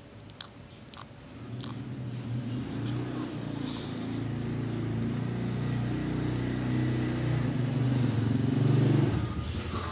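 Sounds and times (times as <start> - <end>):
cat snoring: 2.6 - 4.5.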